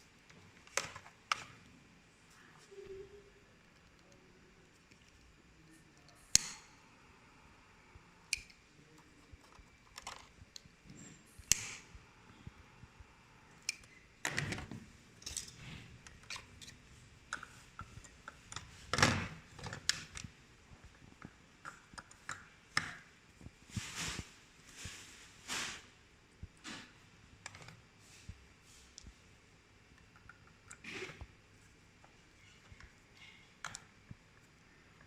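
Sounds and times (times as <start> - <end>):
clicks and taps of plastic parts: 32.4 - 34.5.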